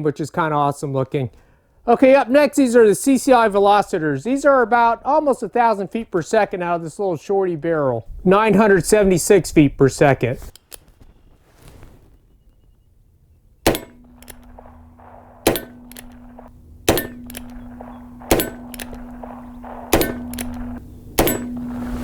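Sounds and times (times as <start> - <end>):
faint clicks: 13.7 - 22.0
revolver shots: 13.7 - 22.0
steady low hum: 13.7 - 22.0.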